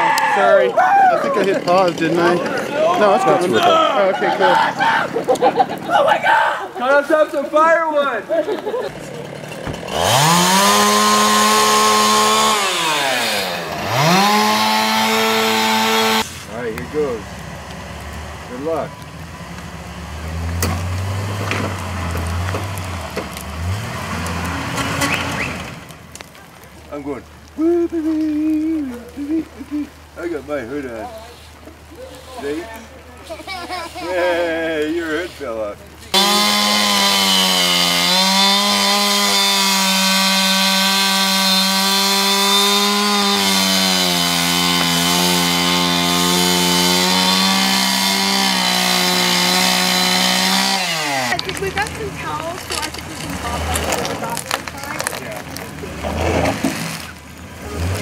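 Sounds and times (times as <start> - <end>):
wood cracking: 0.9 - 7.5, 8.3 - 33.5, 35.8 - 58.0
chainsaw cutting tree: 8.8 - 16.4, 19.6 - 25.8, 36.1 - 57.1.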